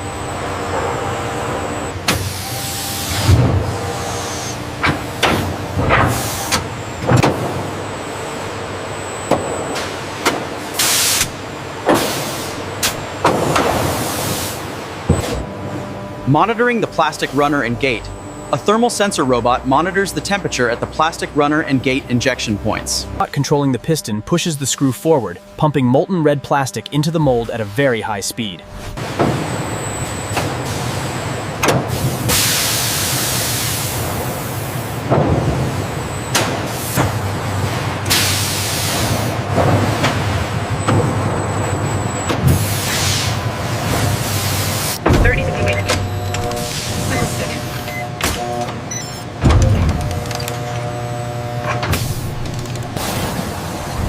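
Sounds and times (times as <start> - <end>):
industrial machinery running: 0.0 - 54.0
loud pressure hiss: 32.0 - 34.0
machine clunks: 45.0 - 50.9.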